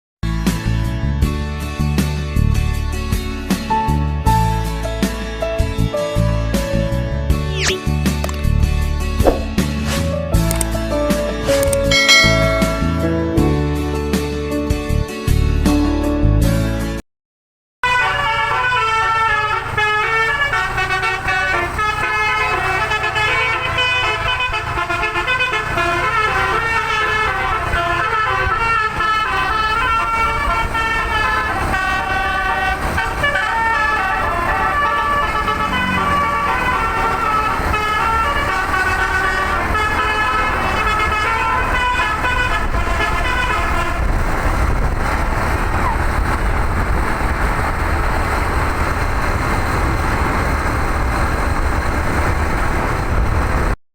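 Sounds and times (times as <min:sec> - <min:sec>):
bus engine and road rumble: 0:00.2 - 0:17.0, 0:17.8 - 0:53.8
musical air horn playing a tune: 0:11.5 - 0:13.6, 0:17.8 - 0:44.7.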